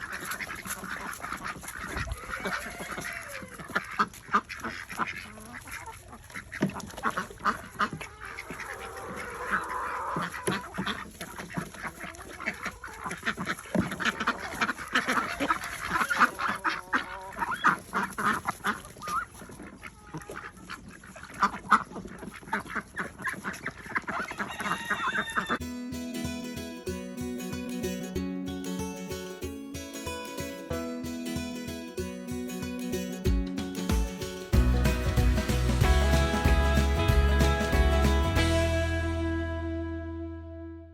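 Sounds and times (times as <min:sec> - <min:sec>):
waterfowl flock calling: 0:00.0 - 0:25.6, 0:33.9 - 0:39.2
music: 0:25.6 - 0:40.9.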